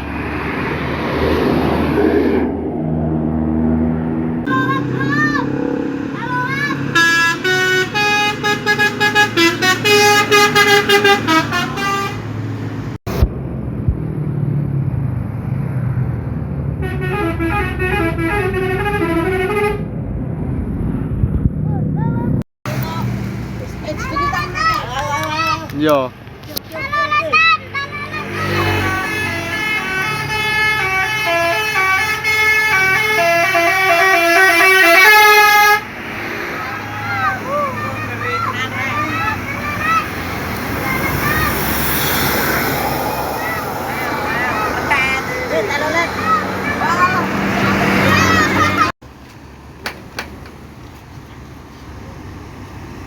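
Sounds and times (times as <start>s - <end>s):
tuned bus horns playing a tune: 6.7s - 12.4s, 16.8s - 19.9s, 28.7s - 35.9s.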